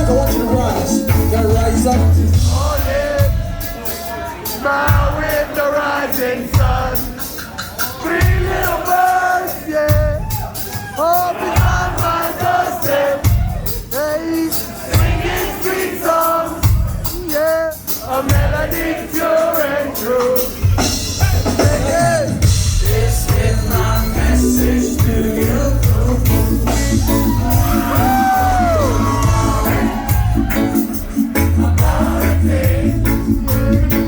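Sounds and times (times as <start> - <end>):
bass line: 0.0 - 3.5, 21.6 - 34.0
reggae band playing: 0.0 - 34.0
person singing: 21.4 - 34.0.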